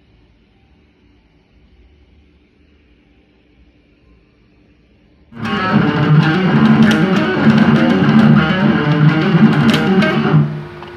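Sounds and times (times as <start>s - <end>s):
electric guitar music: 5.4s - 10.8s.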